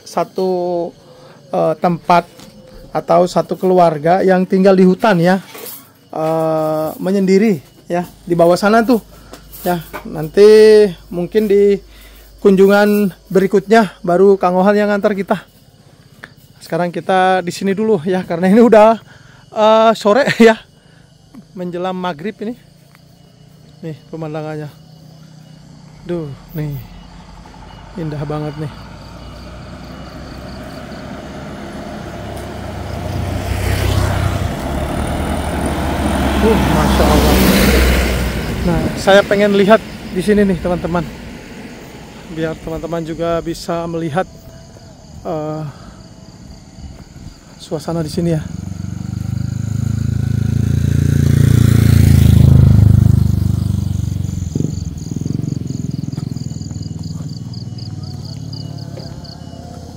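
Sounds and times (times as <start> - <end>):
insects chirping: 0.0 - 59.9
vehicle passing: 22.4 - 59.9.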